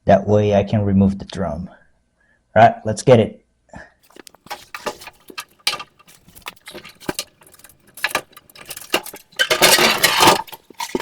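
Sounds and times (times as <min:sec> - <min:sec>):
metallic clinks and rattles: 0:04.1 - 0:11.0.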